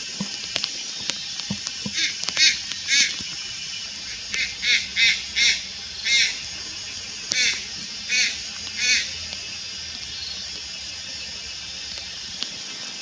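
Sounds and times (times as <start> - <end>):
heron honking calls: 1.8 - 3.3, 3.9 - 9.2.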